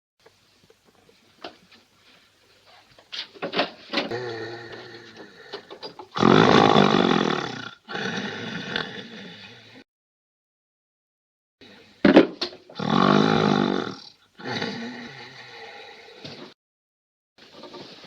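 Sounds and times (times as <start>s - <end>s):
man snoring: 4.1s - 9.8s, 12.8s - 16.2s.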